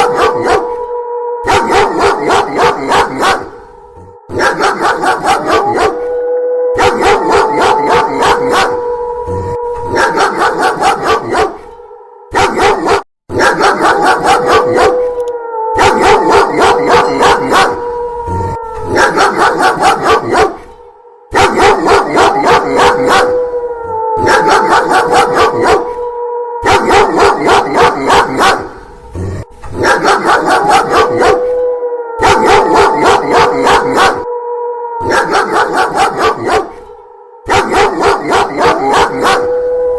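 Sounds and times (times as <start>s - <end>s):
dog barking: 0.0s - 0.8s, 1.4s - 3.6s, 4.3s - 6.0s, 6.8s - 8.8s, 9.9s - 15.2s, 15.8s - 17.8s, 18.9s - 23.4s, 24.2s - 26.0s, 26.6s - 28.8s, 29.7s - 31.6s, 32.2s - 34.3s, 35.0s - 39.6s
wolf howling: 0.0s - 39.9s.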